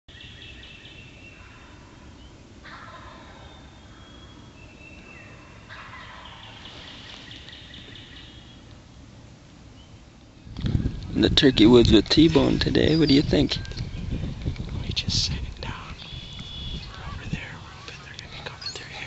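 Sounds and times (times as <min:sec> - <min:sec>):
turkey gobbling: 0:02.6 - 0:03.6, 0:05.3 - 0:06.8.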